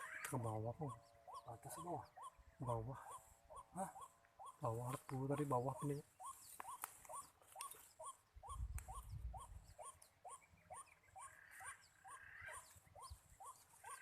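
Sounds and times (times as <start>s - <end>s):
animal call notes: 0.0s - 14.0s.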